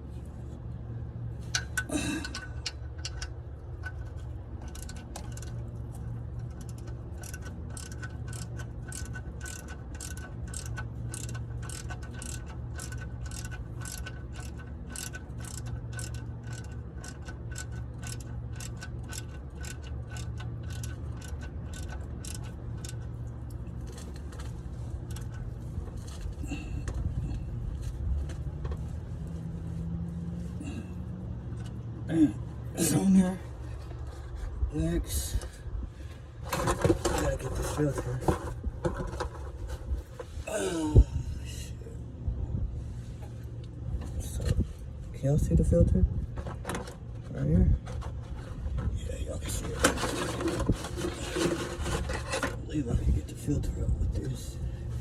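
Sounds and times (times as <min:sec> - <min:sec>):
low hum: 0:00.0 - 0:55.0
ratchet wrench clicking: 0:01.5 - 0:23.2.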